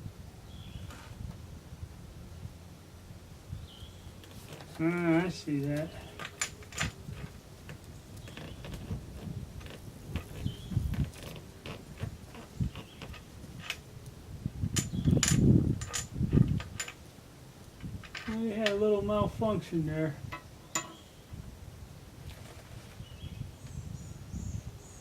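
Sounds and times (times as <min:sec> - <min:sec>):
handling noise: 0:04.2 - 0:14.0, 0:14.7 - 0:17.1, 0:20.3 - 0:21.0.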